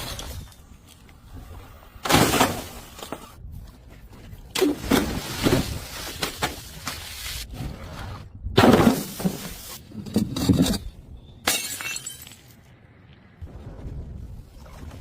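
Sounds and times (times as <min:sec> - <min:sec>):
glass bottles shattering: 0:11.4 - 0:12.5.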